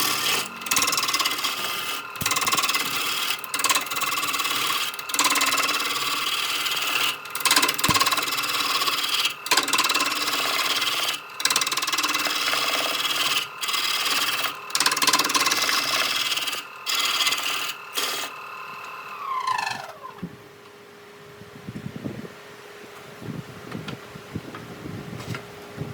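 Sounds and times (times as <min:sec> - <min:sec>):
tool cutting wood: 0:00.0 - 0:20.2
power tool motor whine: 0:00.0 - 0:20.5.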